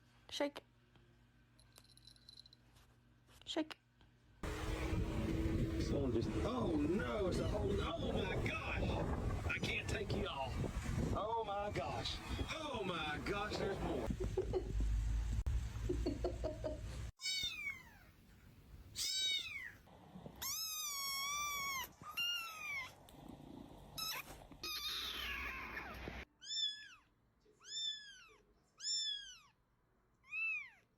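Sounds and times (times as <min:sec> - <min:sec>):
low rumbling noise: 0:04.4 - 0:15.8
cats meowing: 0:17.2 - 0:18.1, 0:19.0 - 0:19.8, 0:20.4 - 0:23.0, 0:24.0 - 0:29.6, 0:30.2 - 0:30.9.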